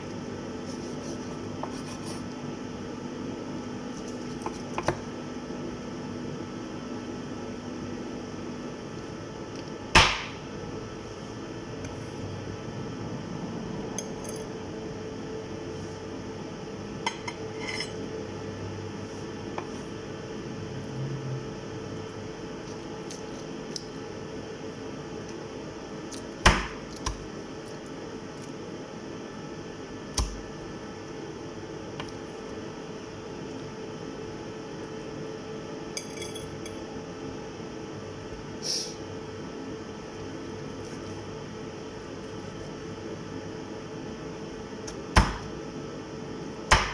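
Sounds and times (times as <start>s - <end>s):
steady background hum: 0.0s - 46.9s
kitchenware clinking: 36.0s - 36.8s.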